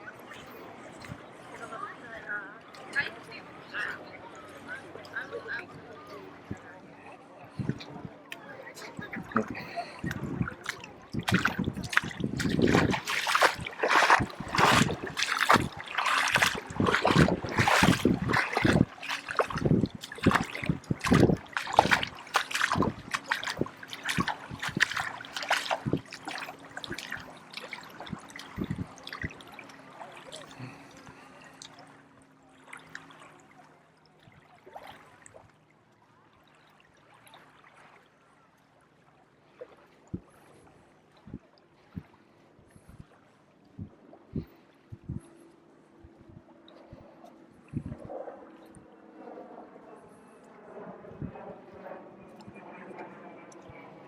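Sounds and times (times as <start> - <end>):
footsteps splashing in shallow water: 7.6 - 35.6.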